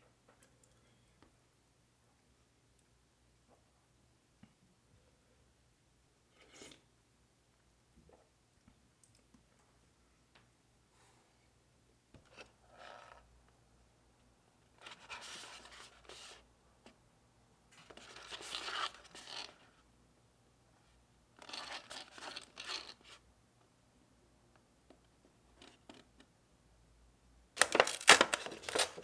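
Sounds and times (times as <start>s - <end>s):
plastic packaging crinkling and tearing: 27.6s - 29.0s.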